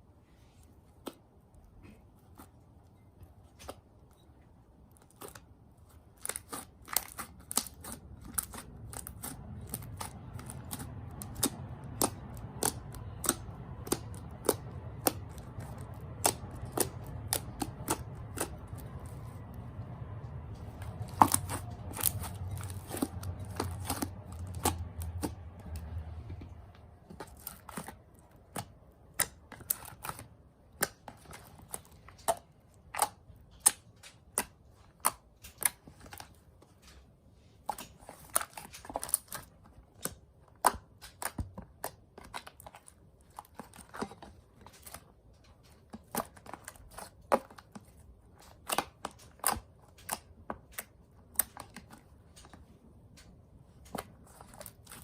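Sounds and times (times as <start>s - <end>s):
slime clicking and popping: 6.2s - 19.4s.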